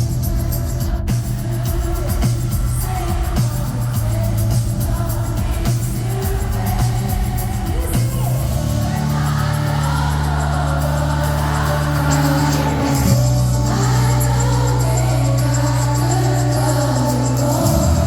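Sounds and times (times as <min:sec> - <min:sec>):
live pop music with singing: 0:00.0 - 0:18.0.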